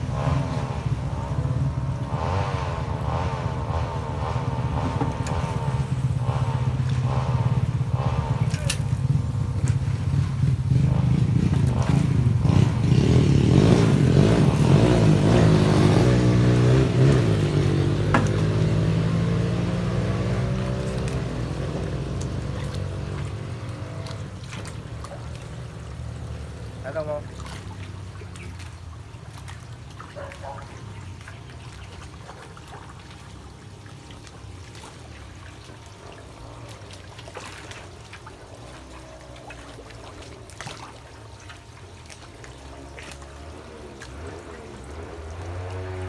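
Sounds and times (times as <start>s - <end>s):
vehicle engine running: 0.0s - 28.9s, 42.5s - 46.0s.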